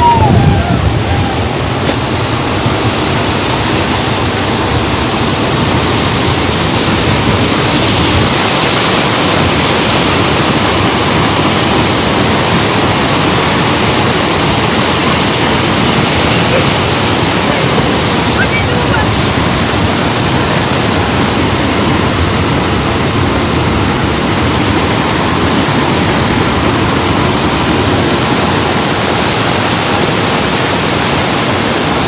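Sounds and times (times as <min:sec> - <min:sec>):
wind rushing: 0:00.0 - 0:03.7
hiss surge: 0:00.0 - 0:32.0
turboprop engines droning: 0:00.0 - 0:32.0.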